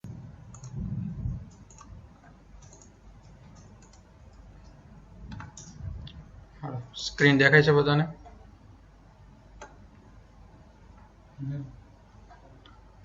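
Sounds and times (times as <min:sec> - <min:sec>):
low muffled bump: 0:00.0 - 0:01.5.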